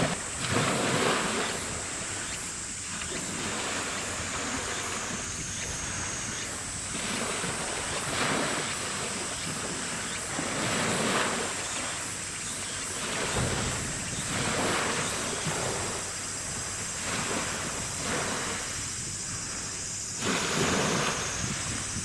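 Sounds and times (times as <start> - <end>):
wind buffeting microphone: 13.1 - 19.6, 20.2 - 22.0.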